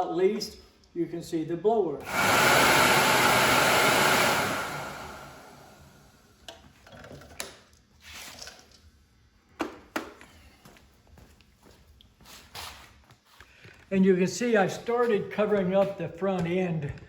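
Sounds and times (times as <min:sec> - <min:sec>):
blower motor winding down: 0:02.0 - 0:06.2.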